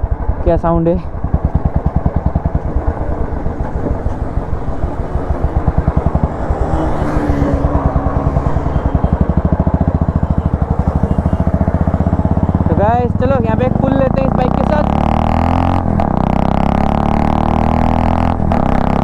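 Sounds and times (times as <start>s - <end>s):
motorcycle engine thumping: 0.0s - 19.0s.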